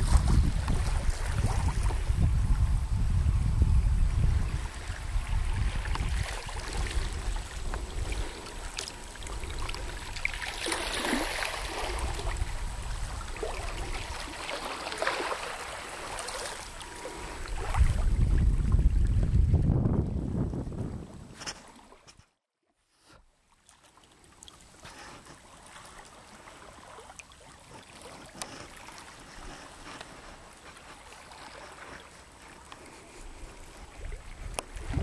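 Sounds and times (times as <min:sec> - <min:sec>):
wind buffeting microphone: 0:00.0 - 0:14.6, 0:16.7 - 0:21.6, 0:33.0 - 0:35.0
water lapping and splashing: 0:00.0 - 0:35.0.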